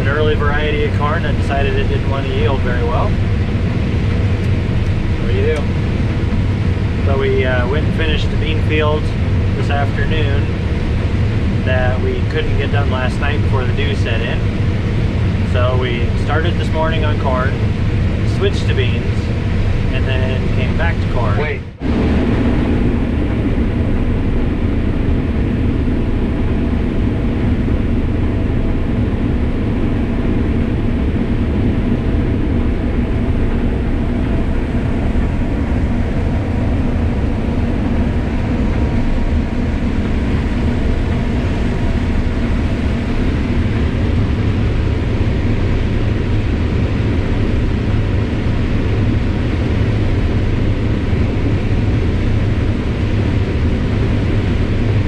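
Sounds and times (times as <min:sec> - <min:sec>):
combine harvester drone: 0:00.0 - 0:55.0.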